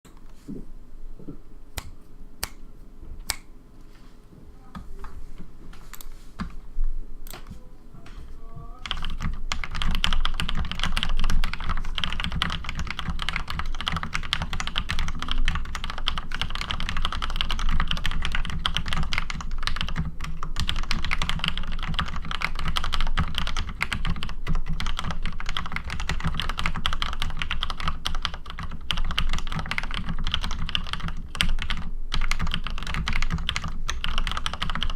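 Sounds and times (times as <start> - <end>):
mechanical keyboard typing: 8.8 - 34.9.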